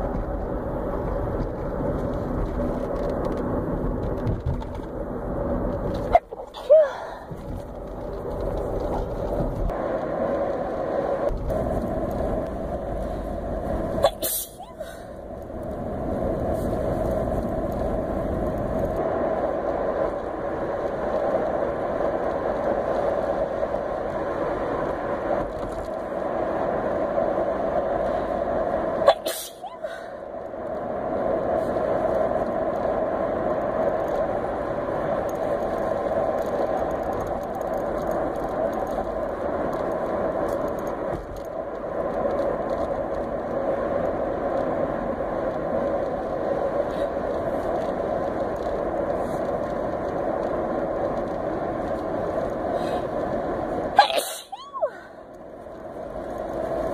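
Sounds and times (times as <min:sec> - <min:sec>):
car interior rumble: 0:00.0 - 0:56.9
woman sneezing: 0:14.0 - 0:14.9, 0:29.1 - 0:29.9, 0:54.0 - 0:54.9.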